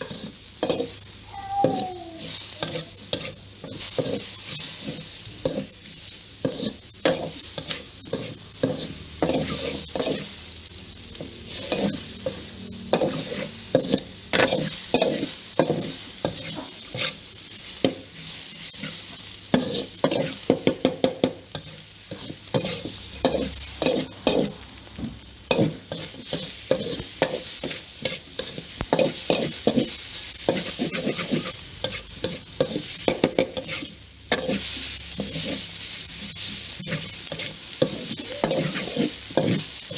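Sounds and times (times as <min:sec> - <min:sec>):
food sizzling in a pan: 0:00.0 - 0:39.9
utensil scraping a pan: 0:02.6 - 0:05.8, 0:06.4 - 0:10.3, 0:18.7 - 0:20.4, 0:21.6 - 0:24.6, 0:25.5 - 0:35.7, 0:36.8 - 0:39.9.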